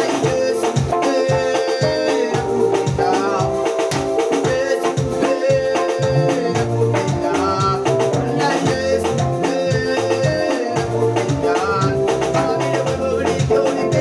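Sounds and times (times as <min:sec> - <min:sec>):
person singing: 0:00.0 - 0:14.0
upbeat music: 0:00.0 - 0:14.0.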